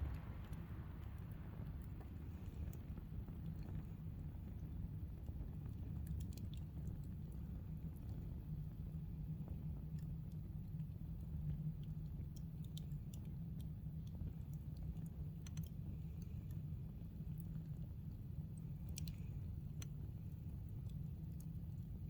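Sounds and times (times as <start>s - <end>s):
campfire crackling and popping: 0.0s - 14.7s
low fire rumble: 0.0s - 22.0s.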